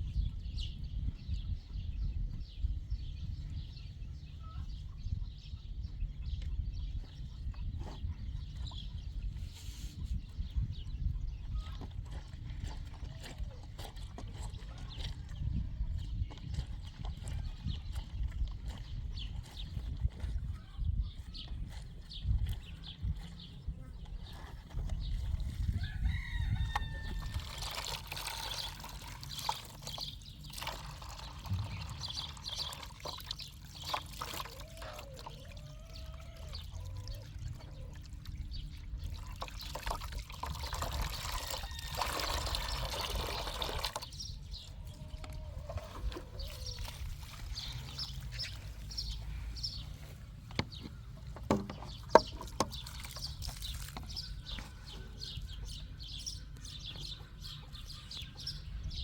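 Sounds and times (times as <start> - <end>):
birds chirping: 0.0 - 59.0
water pouring and trickling: 26.6 - 49.3, 50.0 - 54.8.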